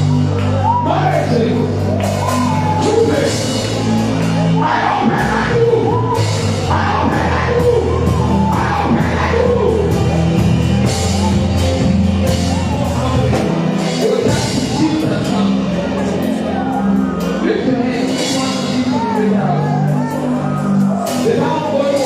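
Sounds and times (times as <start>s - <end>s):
steady drum beat: 0.0s - 22.0s
sustained bass notes: 0.0s - 22.0s
people singing: 6.7s - 10.0s.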